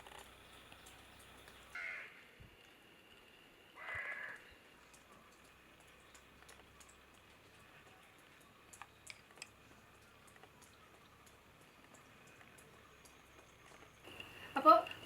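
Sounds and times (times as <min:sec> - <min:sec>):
crow cawing: 0:01.8 - 0:02.2, 0:03.8 - 0:04.4.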